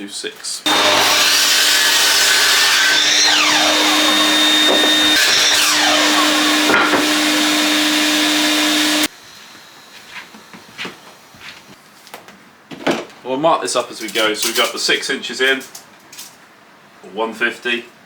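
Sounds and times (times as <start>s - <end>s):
power saw cutting timber: 0.7s - 9.1s.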